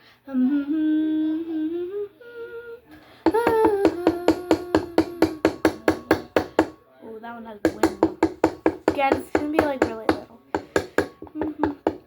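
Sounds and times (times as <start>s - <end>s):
girl humming: 0.3s - 6.2s, 11.2s - 12.0s.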